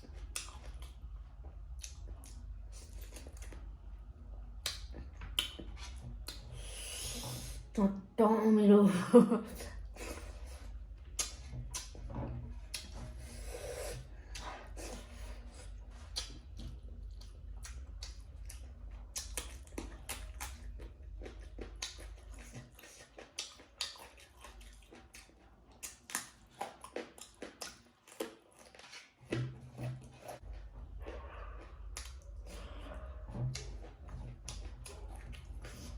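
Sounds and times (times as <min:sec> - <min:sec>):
person chewing food: 0:00.0 - 0:07.7, 0:09.6 - 0:35.9
wet mouth clicks and smacks: 0:00.2 - 0:01.0, 0:04.6 - 0:06.6, 0:11.1 - 0:12.0, 0:12.7 - 0:13.1, 0:16.0 - 0:20.6, 0:21.5 - 0:29.1.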